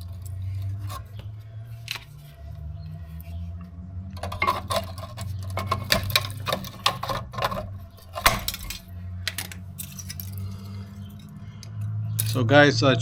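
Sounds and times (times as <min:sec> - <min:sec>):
cutters snipping metal: 0:00.0 - 0:01.3, 0:04.2 - 0:11.2, 0:12.2 - 0:12.4.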